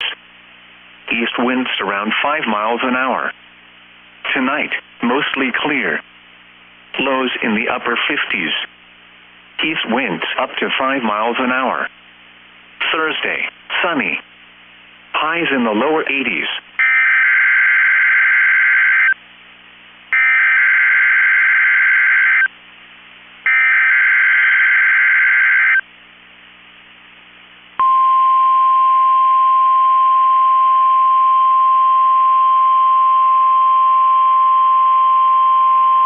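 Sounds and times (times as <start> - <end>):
steady warning alarm tone: 20.2 - 22.5, 23.5 - 25.8.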